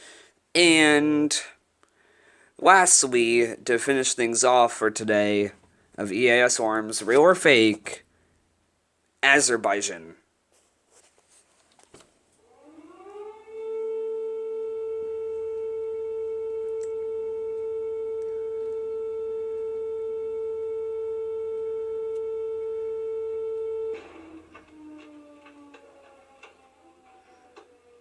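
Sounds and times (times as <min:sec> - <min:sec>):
civil defence siren wailing: 0:12.4 - 0:28.0
faint tones sliding down: 0:12.5 - 0:28.0.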